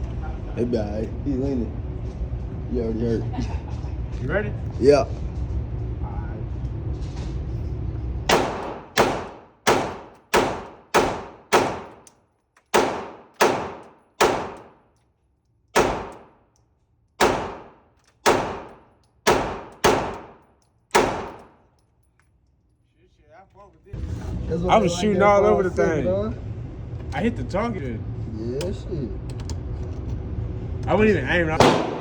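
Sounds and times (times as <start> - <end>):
gunshots: 8.3 - 12.0, 12.7 - 14.8, 15.8 - 16.4, 17.2 - 21.6, 31.6 - 32.0.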